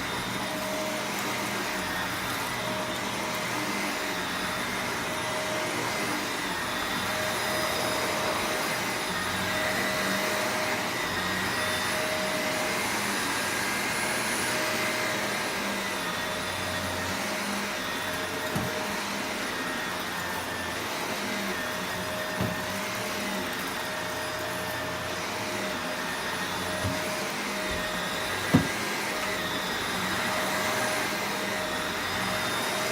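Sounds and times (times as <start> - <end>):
vacuum cleaner running on carpet: 0.0 - 32.9
small knocks: 18.5 - 18.8, 22.4 - 22.7, 28.5 - 28.8.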